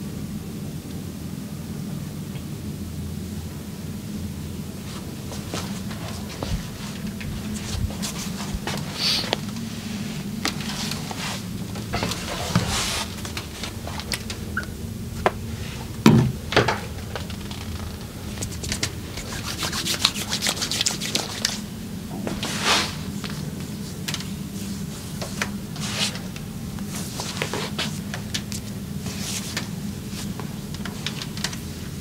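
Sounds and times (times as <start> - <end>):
steady low hum: 0.0 - 32.0
hands rubbing skin: 18.3 - 21.7.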